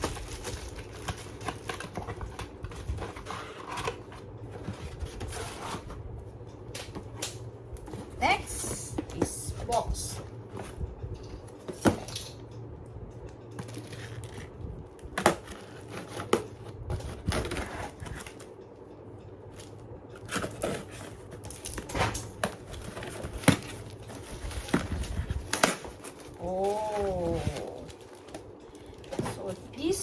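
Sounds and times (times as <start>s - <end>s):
cardboard packaging handled: 0.0s - 6.0s, 13.6s - 18.5s, 20.2s - 29.6s.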